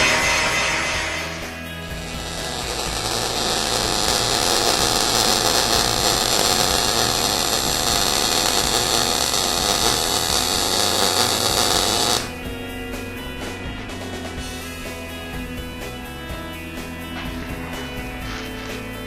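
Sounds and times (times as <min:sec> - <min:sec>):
arc welder hissing: 0:00.0 - 0:12.4.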